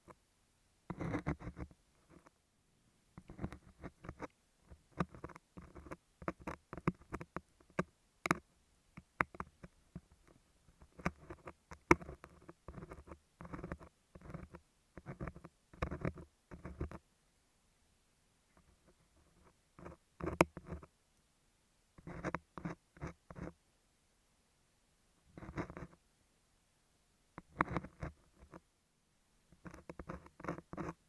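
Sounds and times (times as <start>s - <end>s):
ear pick scraping beeswax: 0.9s - 2.4s, 3.2s - 8.4s, 9.0s - 17.0s, 18.6s - 20.9s, 25.3s - 26.0s, 27.4s - 28.6s, 29.5s - 31.0s.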